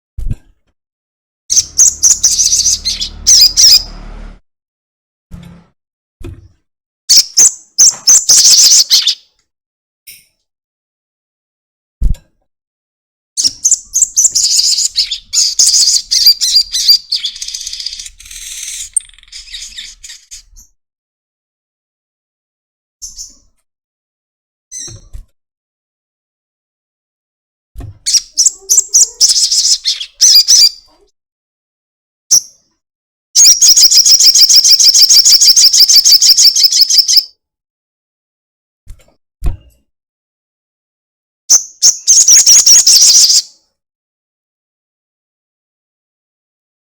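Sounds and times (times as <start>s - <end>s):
bird chattering chirps: 1.5s - 3.9s, 13.4s - 20.5s, 28.1s - 30.8s, 33.4s - 37.2s, 41.5s - 43.4s.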